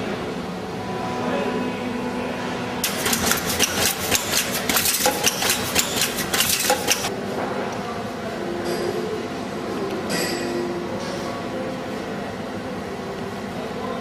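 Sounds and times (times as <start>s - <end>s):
steady motor hum: 0.0s - 10.0s
rapid mechanical clicks and knocks: 2.8s - 7.1s.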